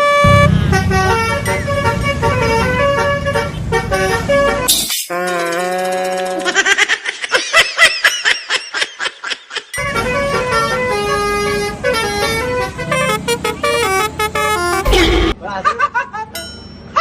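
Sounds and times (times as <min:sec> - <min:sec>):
bus horn playing a tune: 0:00.0 - 0:05.4, 0:09.8 - 0:15.4.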